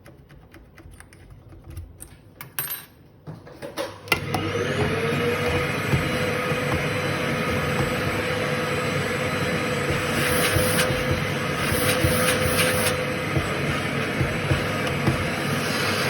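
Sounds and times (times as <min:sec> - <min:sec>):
machine whirring with whine: 0:04.1 - 0:16.0.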